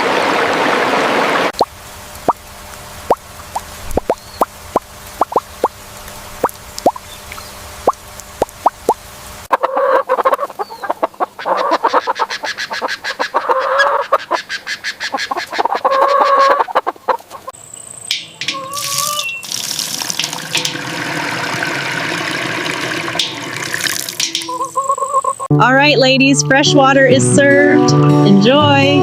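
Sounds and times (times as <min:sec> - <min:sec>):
water being poured: 0:01.6 - 0:09.0, 0:18.4 - 0:24.7
chickens clucking: 0:09.5 - 0:17.5, 0:18.4 - 0:19.4, 0:24.2 - 0:25.5.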